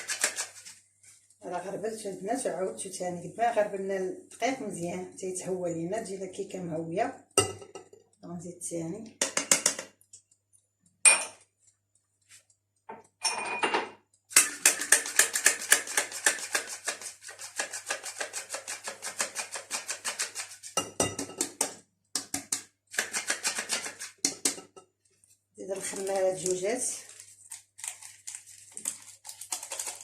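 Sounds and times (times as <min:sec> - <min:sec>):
whisk clicking against bowl: 0:00.0 - 0:00.7, 0:14.3 - 0:24.7.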